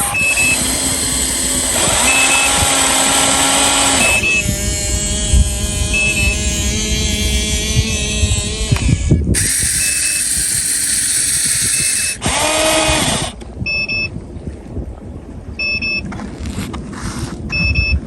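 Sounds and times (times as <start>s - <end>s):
short electronic beeps: 0.0s - 4.9s, 5.6s - 8.4s, 9.4s - 12.2s, 13.6s - 14.2s, 15.6s - 16.1s, 17.5s - 18.0s
loud hissing rush: 0.0s - 12.6s
rising and falling whine: 0.0s - 13.4s.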